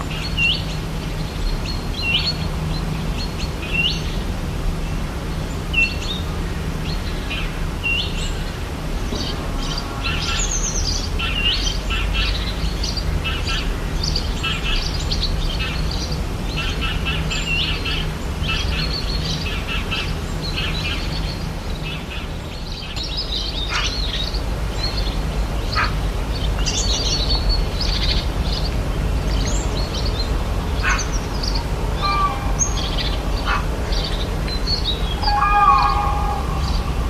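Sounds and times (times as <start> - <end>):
birds chirping and calling: 6.9 - 37.0
steady low rumble: 21.4 - 37.0
whistled bird notes: 32.0 - 37.0.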